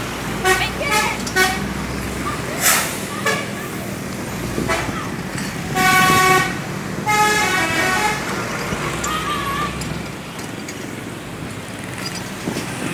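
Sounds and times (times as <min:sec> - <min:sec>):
truck engine running: 0:00.0 - 0:12.9
musical truck horn blasts: 0:00.4 - 0:01.7, 0:05.7 - 0:08.3.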